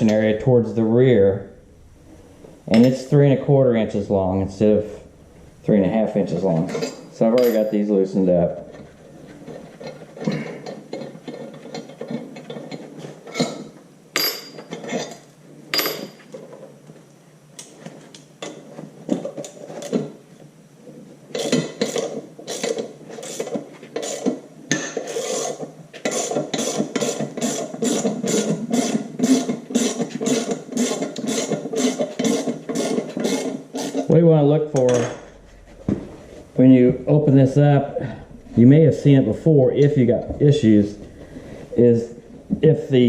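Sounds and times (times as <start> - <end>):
metal tools clinking: 6.5 - 7.8.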